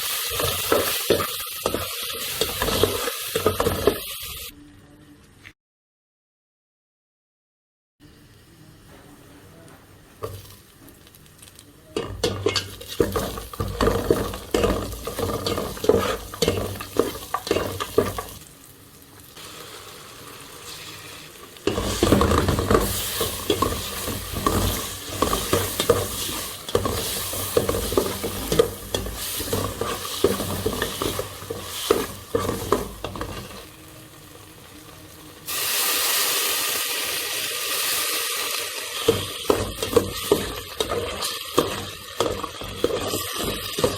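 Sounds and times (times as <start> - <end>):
food sizzling in oil: 0.0 - 4.5, 8.0 - 43.9
spoon scraping a hot pan: 0.0 - 4.5, 12.0 - 18.4, 20.7 - 33.6, 37.8 - 43.9
steady loud hiss: 33.0 - 38.7.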